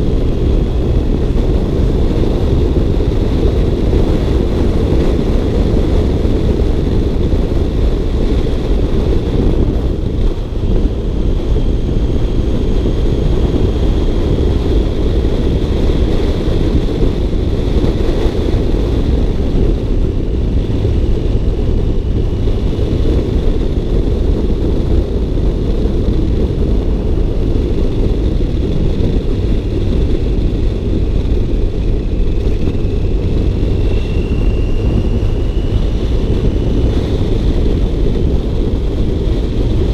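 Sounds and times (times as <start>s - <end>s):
car engine and road rumble: 0.0s - 39.9s
faint high whine: 31.5s - 38.0s.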